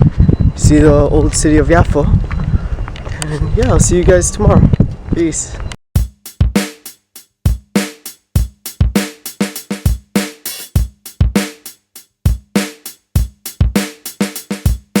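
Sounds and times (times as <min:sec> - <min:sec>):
drum kit beat: 0:06.0 - 0:15.0.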